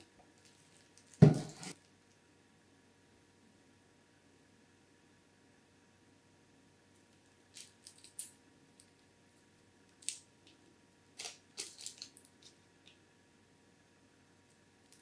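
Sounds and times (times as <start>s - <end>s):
plastic and cardboard packaging crinkling: 11.2s - 12.6s.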